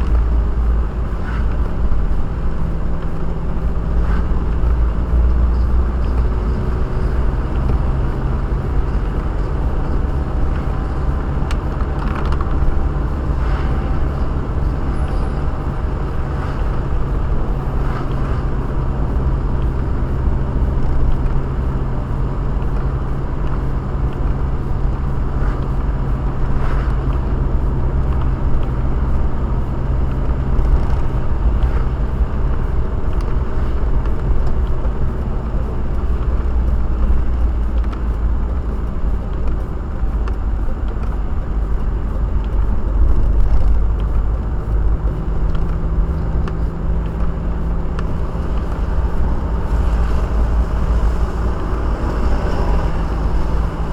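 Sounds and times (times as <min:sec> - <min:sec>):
car engine and road noise: 0:00.0 - 0:53.9.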